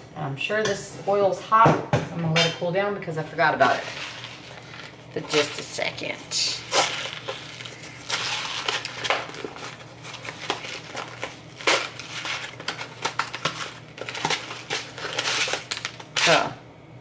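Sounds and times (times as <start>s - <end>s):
packaging crinkling and crunching: 3.7s - 16.5s.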